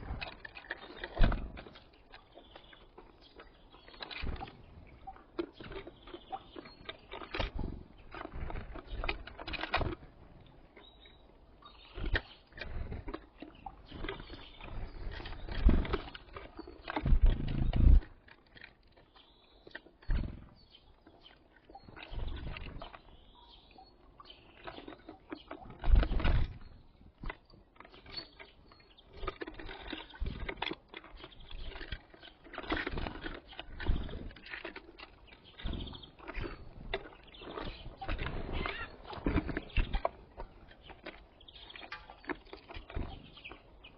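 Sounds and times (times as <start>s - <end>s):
wind buffeting microphone: 35.4s - 40.7s.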